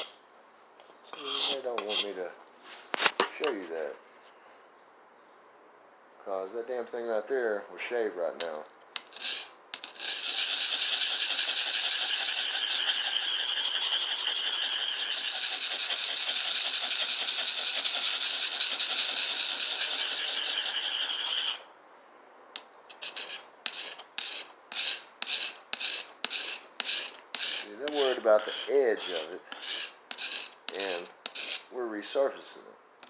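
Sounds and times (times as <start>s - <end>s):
knife being sharpened by hand: 1.1s - 2.2s, 18.6s - 21.6s, 22.9s - 31.7s.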